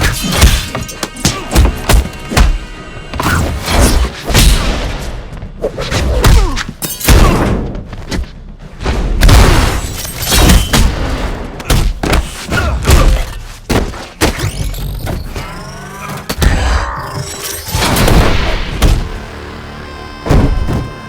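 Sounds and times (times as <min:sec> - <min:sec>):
dramatic music: 0:00.0 - 0:07.8, 0:15.1 - 0:21.0.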